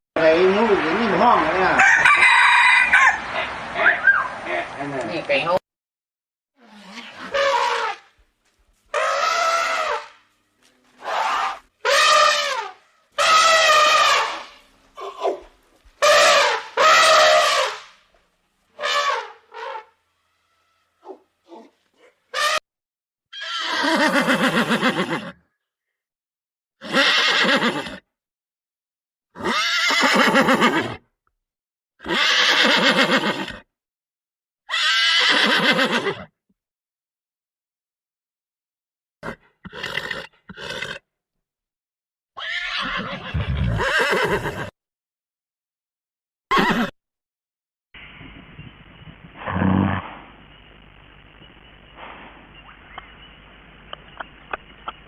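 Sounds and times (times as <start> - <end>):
horse whinnying: 6.6 - 8.1, 8.9 - 10.1, 11.0 - 17.8, 23.3 - 25.4, 26.8 - 28.0, 29.4 - 31.0, 32.0 - 33.6, 34.7 - 36.3, 39.2 - 41.0, 42.4 - 44.7, 46.5 - 46.9, 49.4 - 50.2
loud drawn-out animal calls: 6.6 - 8.2, 8.9 - 10.3, 10.9 - 18.1, 18.8 - 22.6, 23.3 - 25.4, 26.8 - 28.0, 29.4 - 31.0, 32.0 - 33.6, 34.7 - 36.2, 42.4 - 44.7, 46.5 - 46.9, 49.0 - 50.6.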